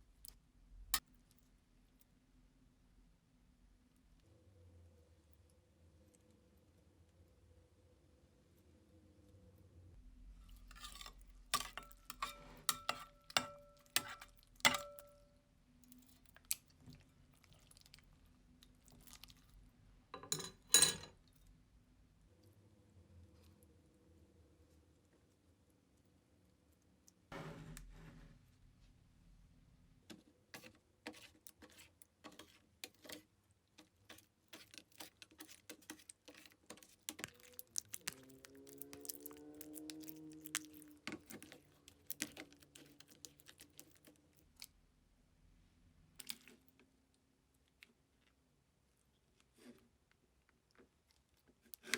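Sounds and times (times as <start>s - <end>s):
utensil clinking against bowl: 10.8s - 15.2s, 20.2s - 21.1s.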